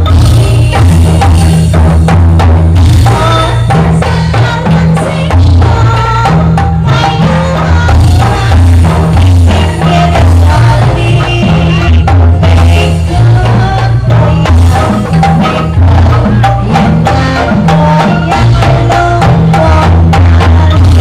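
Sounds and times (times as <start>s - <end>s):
deep bass notes: 0.0s - 21.0s
drums and percussion beat: 0.0s - 21.0s
pitched melody instruments: 2.6s - 21.0s.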